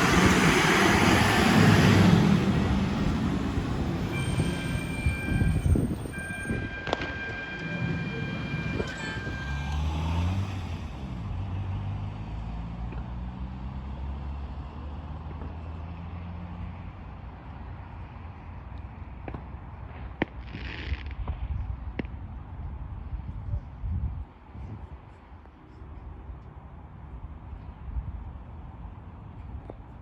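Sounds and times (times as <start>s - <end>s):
fire engine revving and driving: 0.0s - 23.3s
fire engine air horn blasts: 4.1s - 10.0s.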